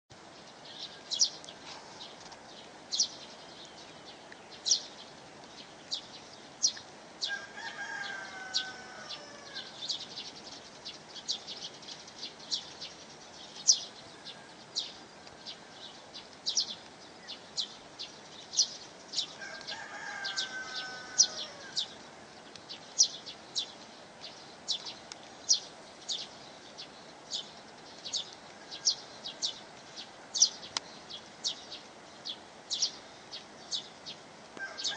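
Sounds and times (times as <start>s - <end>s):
background hiss: 0.1s - 34.9s
rooster crowing: 7.2s - 9.8s, 19.4s - 21.8s, 34.6s - 34.9s.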